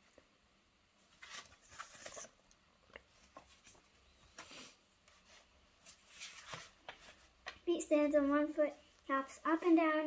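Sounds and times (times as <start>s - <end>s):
paper page rustling: 1.1s - 7.6s.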